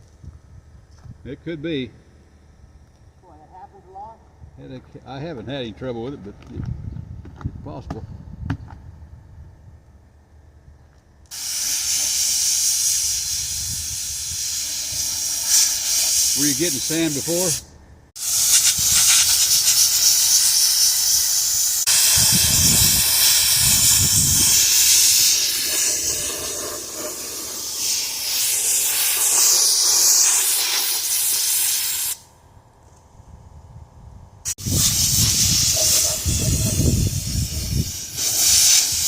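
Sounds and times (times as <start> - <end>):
sandblaster hissing: 11.3 - 17.6, 18.2 - 32.3, 34.5 - 39.0.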